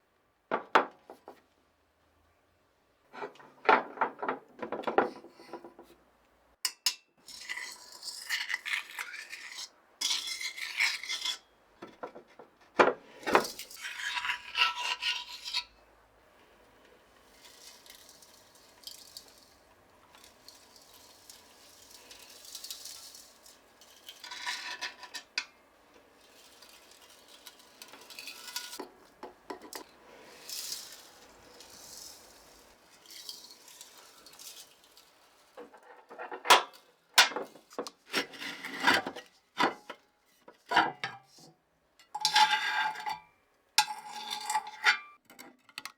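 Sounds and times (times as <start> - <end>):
metal parts clattering and scraping: 17.2 - 25.4, 26.0 - 28.8, 29.5 - 40.0.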